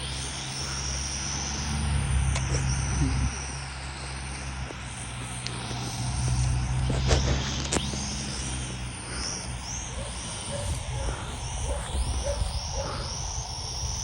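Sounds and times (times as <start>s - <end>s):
distant drone propellers whining: 0.0s - 14.0s
wind on microphone: 10.1s - 14.0s.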